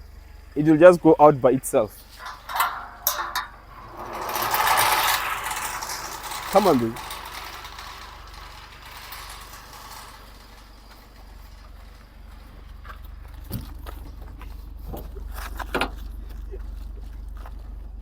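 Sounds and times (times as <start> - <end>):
car engine idling: 0.0 - 18.0
clicks and knocks: 2.1 - 12.6.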